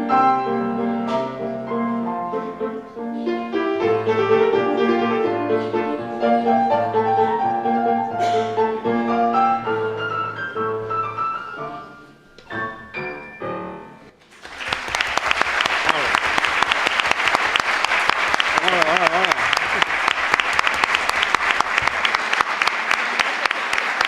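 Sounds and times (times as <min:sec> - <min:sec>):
slow piano music: 0:00.0 - 0:14.2.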